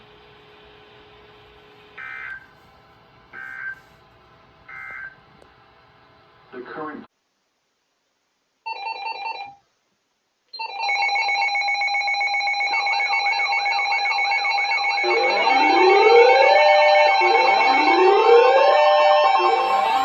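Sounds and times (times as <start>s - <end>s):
warbling electronic chirps: 14.5s - 20.0s
held electronic chord: 15.0s - 20.0s
rising pitch sweeps: 15.0s - 20.0s.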